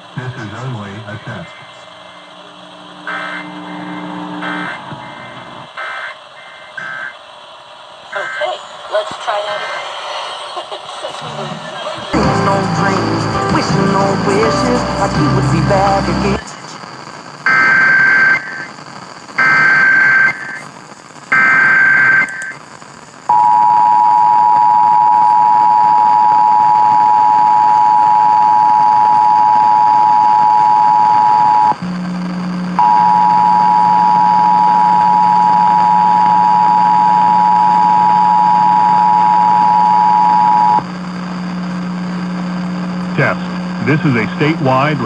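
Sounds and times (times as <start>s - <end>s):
low hum: 0.1s - 5.8s, 12.2s - 16.4s
warbling data tones: 1.0s - 7.2s.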